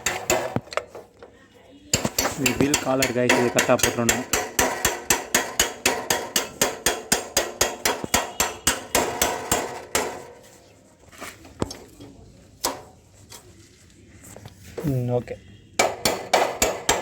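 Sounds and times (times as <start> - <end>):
hammer tapping on metal: 0.0 - 0.8, 1.9 - 10.3, 15.8 - 17.0.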